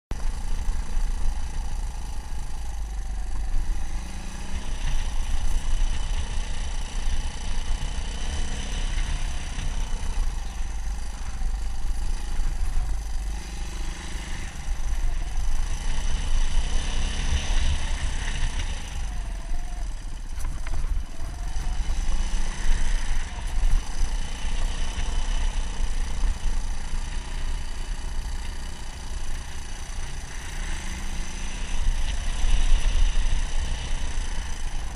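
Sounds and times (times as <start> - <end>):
motorcycle engine revving: 0.1 - 34.9.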